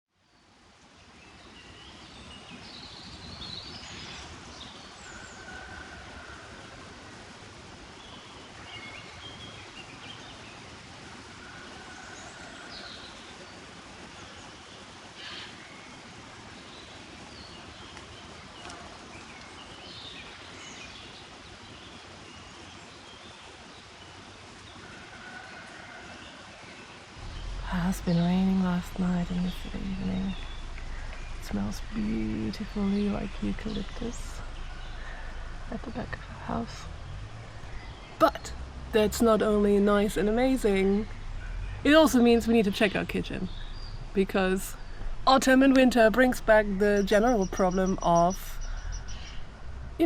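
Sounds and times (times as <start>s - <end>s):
birds chirping: 0.2s - 25.6s, 26.2s - 50.0s
steady background hiss: 0.2s - 50.0s
steady background noise: 26.5s - 50.0s.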